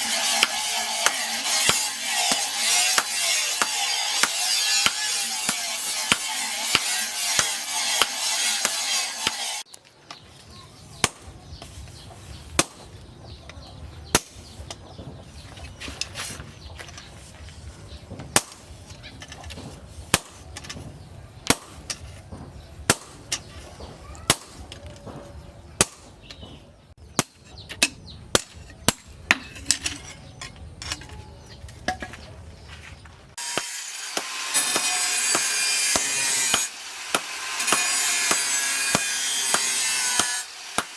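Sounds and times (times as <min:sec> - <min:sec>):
hand tool scraping steel: 0:00.0 - 0:09.7, 0:27.2 - 0:32.2, 0:33.4 - 0:40.9.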